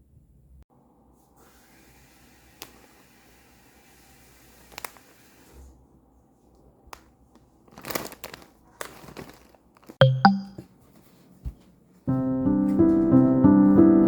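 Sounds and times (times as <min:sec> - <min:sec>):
crinkling and rustling handling: 0:06.9 - 0:10.0
piano music: 0:10.0 - 0:10.5, 0:12.1 - 0:14.0.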